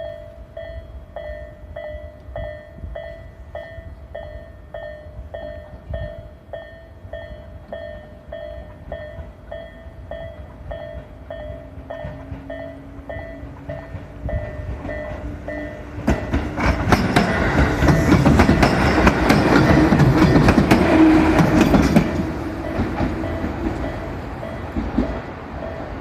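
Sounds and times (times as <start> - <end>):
approaching train hum: 0.0 - 26.0.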